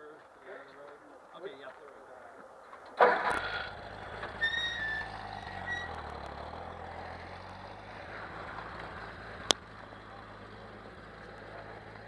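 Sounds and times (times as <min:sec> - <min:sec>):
vehicle engine at low revs: 0:03.0 - 0:12.0.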